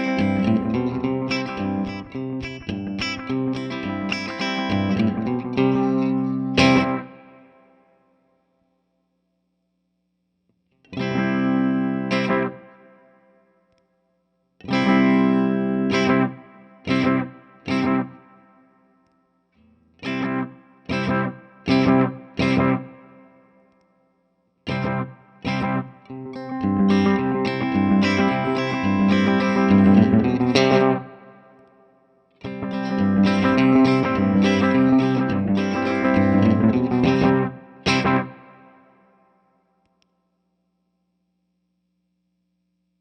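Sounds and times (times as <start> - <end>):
electric guitar chords with delay: 0.0 - 7.4, 10.9 - 13.0, 14.7 - 18.6, 19.8 - 23.4, 24.7 - 31.6, 32.4 - 38.9.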